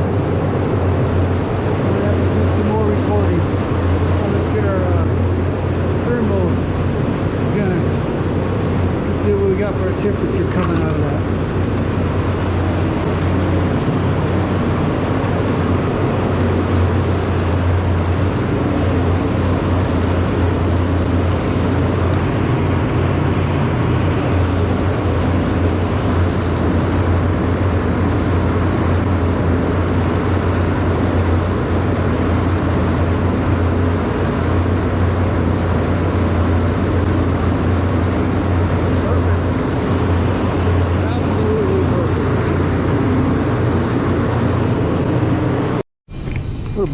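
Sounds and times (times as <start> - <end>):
heater fan blowing air: 0.0 - 46.9
low motor hum: 0.0 - 46.9.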